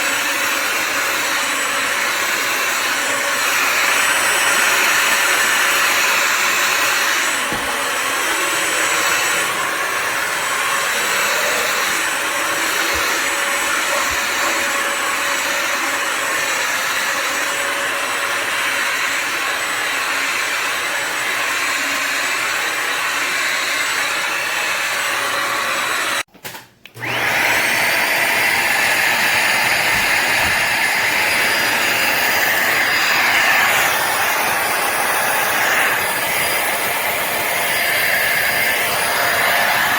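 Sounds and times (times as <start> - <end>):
steam mop vacuum running: 0.0 - 26.3, 27.0 - 39.9.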